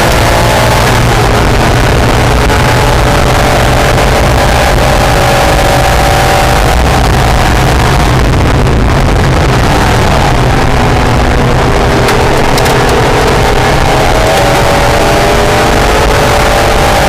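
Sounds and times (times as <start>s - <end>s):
car engine revving: 0.0s - 17.0s
wind and road noise: 0.0s - 17.0s
sharp clicks: 12.0s - 13.4s.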